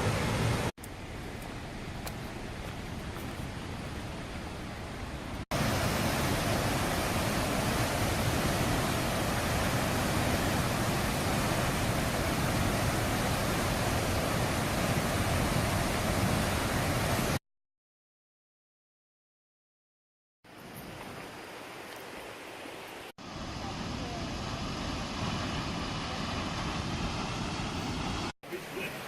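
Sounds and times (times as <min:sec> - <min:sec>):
waterfall rushing: 0:05.5 - 0:17.4.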